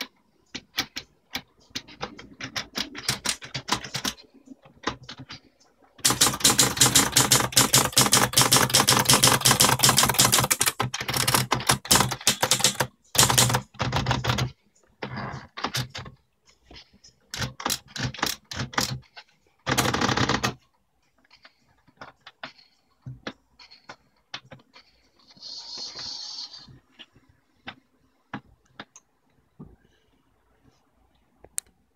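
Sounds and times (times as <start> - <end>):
typewriter key strikes: 6.0 - 13.8.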